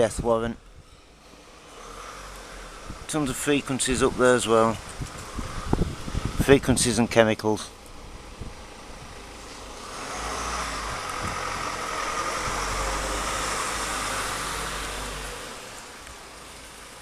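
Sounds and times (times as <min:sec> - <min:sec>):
vehicle passing by: 0:01.3 - 0:06.4, 0:08.0 - 0:17.0.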